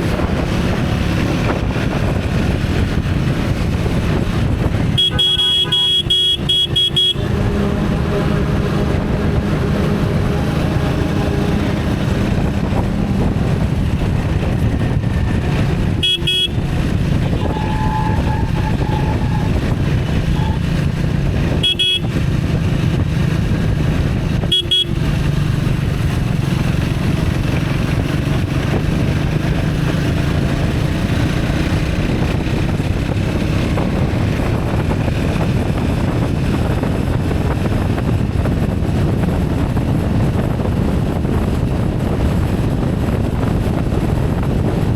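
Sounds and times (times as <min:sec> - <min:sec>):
vehicle engine and road noise: 0:00.0 - 0:44.9
car horns honking: 0:04.4 - 0:12.5, 0:15.1 - 0:22.3, 0:24.4 - 0:25.2.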